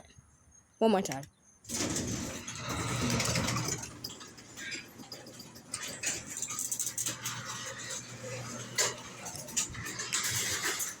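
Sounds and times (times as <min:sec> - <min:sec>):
garage door rattling and squeaking: 0:01.6 - 0:11.0
garage door opener motor hum: 0:01.7 - 0:11.0.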